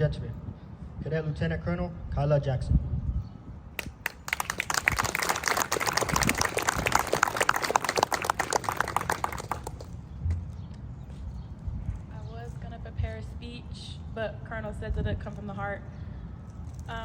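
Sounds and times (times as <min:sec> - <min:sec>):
audience applauding: 0:03.8 - 0:10.0.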